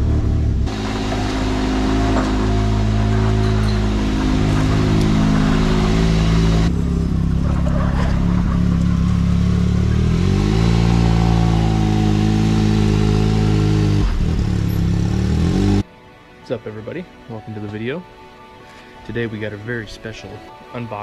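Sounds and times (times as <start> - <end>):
off-road vehicle engine running: 0.0 - 15.8.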